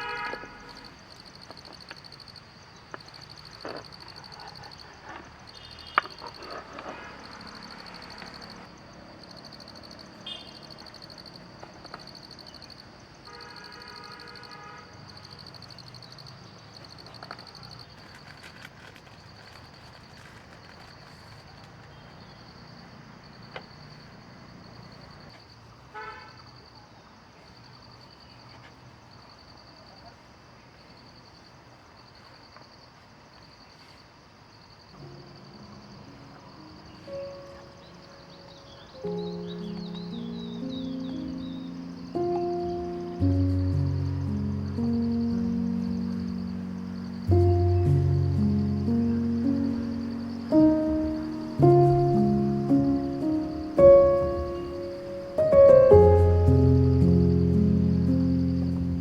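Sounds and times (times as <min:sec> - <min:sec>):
high-pitched insect trill: 0:00.0 - 0:18.3, 0:34.6 - 0:59.0.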